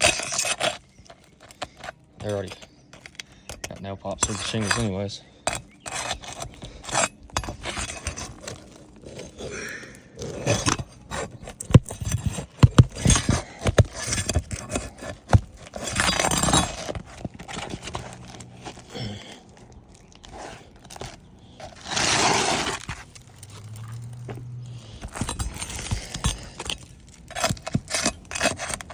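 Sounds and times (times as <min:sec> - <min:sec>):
metal tools knocking on shingles: 0:00.0 - 0:08.7.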